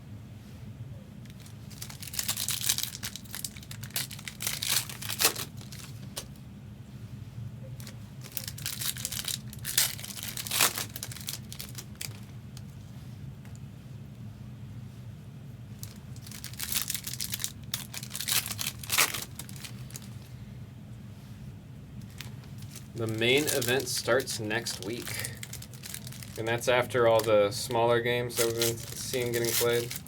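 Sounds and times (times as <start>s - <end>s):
steady low hum: 0.0s - 30.0s
wrappers crinkling and tearing: 1.3s - 6.3s, 7.8s - 12.7s, 15.8s - 20.3s, 22.0s - 30.0s.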